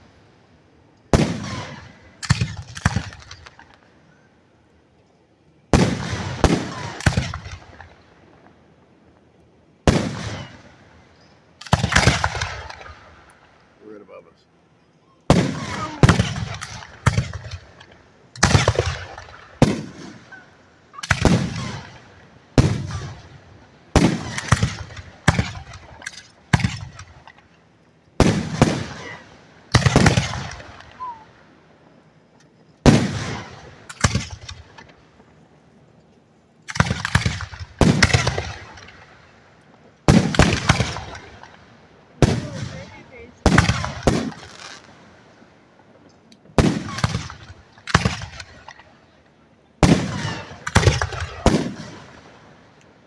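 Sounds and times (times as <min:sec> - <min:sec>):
firework shells booming: 0:01.1 - 0:03.9, 0:05.7 - 0:08.6, 0:09.8 - 0:11.0, 0:11.6 - 0:13.3, 0:15.3 - 0:27.5, 0:28.2 - 0:31.4, 0:32.8 - 0:35.2, 0:36.6 - 0:45.1, 0:46.5 - 0:48.9, 0:49.8 - 0:52.7.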